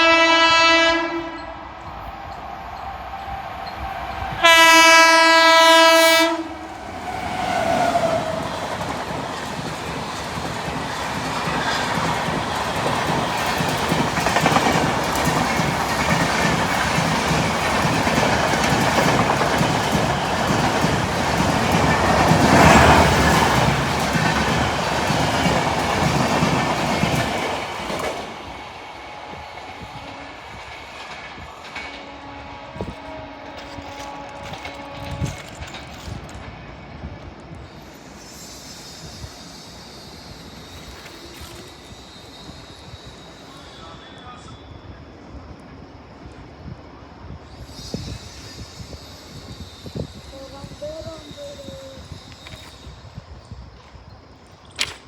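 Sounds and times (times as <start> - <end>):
loud train horn: 0.0 - 1.5, 4.3 - 8.4, 28.9 - 30.7, 31.8 - 35.8
train wheels on track: 0.0 - 55.0.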